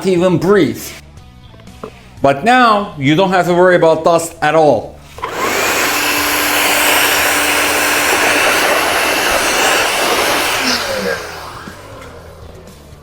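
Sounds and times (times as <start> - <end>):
blower rushing air: 5.0 - 12.9
motor hum: 5.1 - 13.0.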